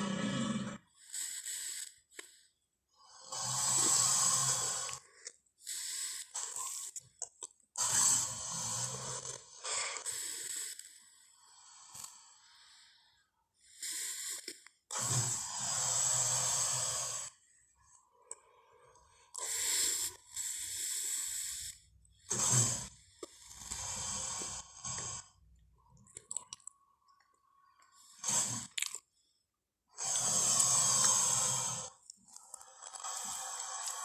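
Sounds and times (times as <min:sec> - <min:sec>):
creature growls and hissing roars: 0:00.0 - 0:00.8, 0:03.2 - 0:05.0, 0:30.0 - 0:34.0.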